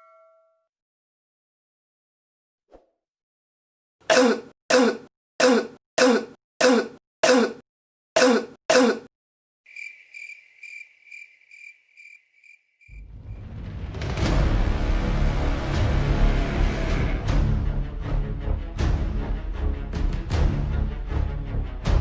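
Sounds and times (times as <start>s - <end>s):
person coughing: 4.1s - 7.6s, 8.2s - 9.1s
cricket chirping: 9.7s - 13.0s.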